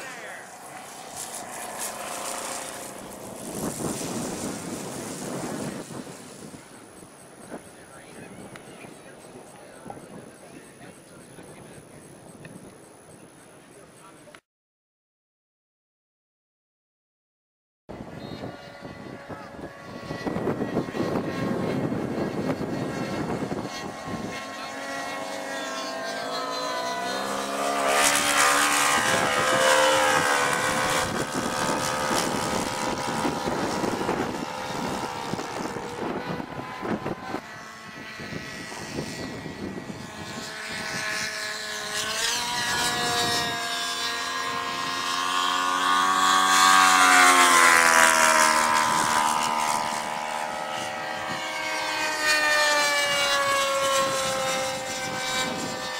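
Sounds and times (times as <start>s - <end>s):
model airplane engine flying by: 0.0s - 14.4s, 17.9s - 55.9s.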